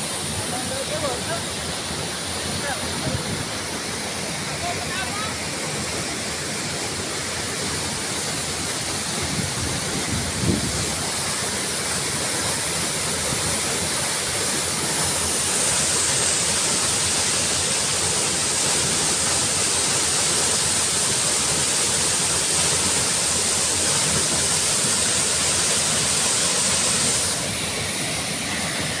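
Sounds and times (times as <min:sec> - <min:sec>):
waterfall rushing: 0:00.0 - 0:29.0.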